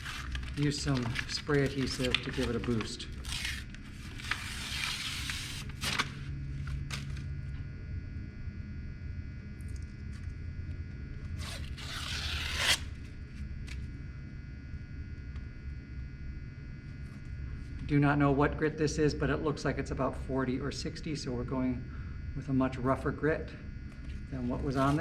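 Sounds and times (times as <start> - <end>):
sandpaper being peeled and torn: 0.0 - 6.2, 11.4 - 12.9.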